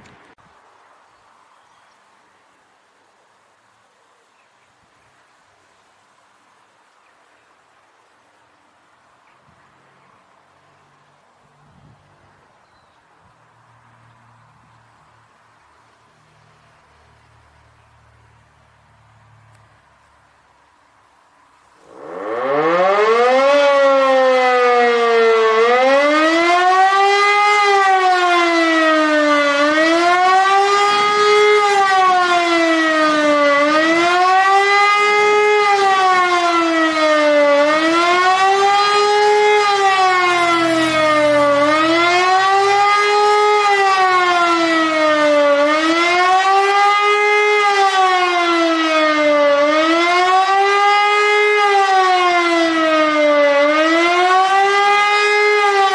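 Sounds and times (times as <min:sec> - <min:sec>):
wavering siren howl: 0:21.8 - 0:55.9.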